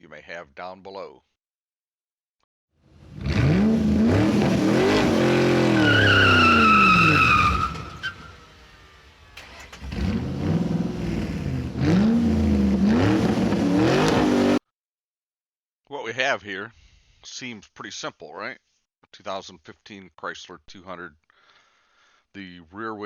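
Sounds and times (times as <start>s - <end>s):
car engine revving: 3.0s - 14.6s
tyre squeal: 5.0s - 8.4s.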